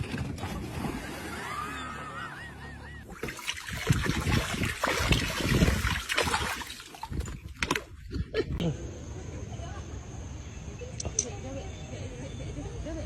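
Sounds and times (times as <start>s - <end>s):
water splashing: 3.0s - 8.1s.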